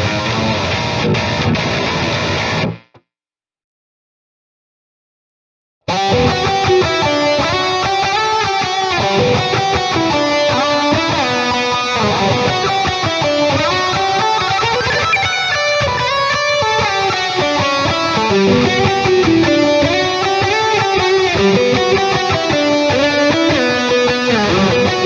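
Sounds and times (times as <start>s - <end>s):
electric guitar lead riff: 0.0s - 3.0s, 5.9s - 25.0s.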